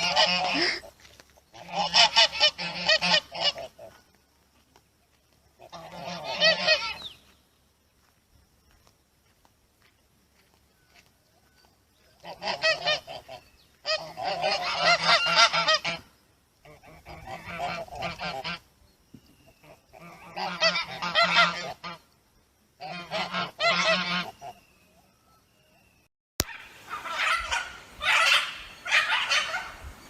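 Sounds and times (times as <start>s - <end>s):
goose honking: 0.0s - 0.9s, 1.5s - 4.0s, 5.6s - 7.1s, 12.2s - 18.6s, 19.6s - 22.0s, 22.8s - 24.6s, 26.5s - 29.8s.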